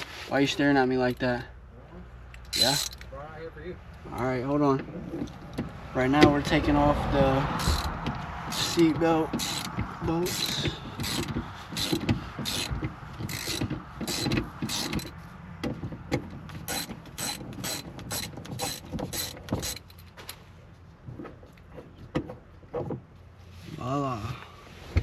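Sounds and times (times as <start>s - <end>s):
ratchet wrench clicking: 2.4s - 3.1s, 7.5s - 15.1s, 16.7s - 20.0s.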